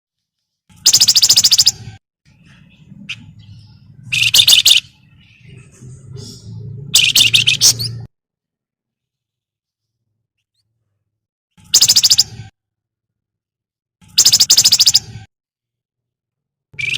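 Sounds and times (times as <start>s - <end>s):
soft bird calls: 0.8s - 8.1s
songbird chattering: 0.9s - 1.8s, 2.6s - 8.1s, 11.7s - 12.4s, 14.2s - 15.1s
low hum: 2.3s - 8.1s.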